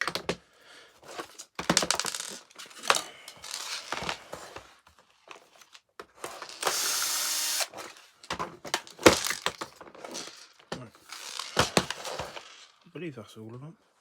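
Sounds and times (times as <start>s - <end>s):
screws and plastic parts clicking: 1.1s - 4.2s, 5.2s - 12.9s
electric screwdriver running: 6.4s - 7.9s, 11.0s - 12.5s.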